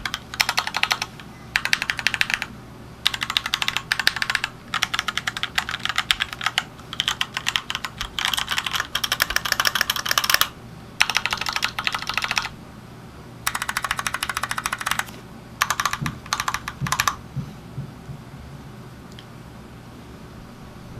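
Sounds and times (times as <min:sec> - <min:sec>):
mechanical keyboard typing: 0:00.0 - 0:12.5, 0:13.5 - 0:17.2.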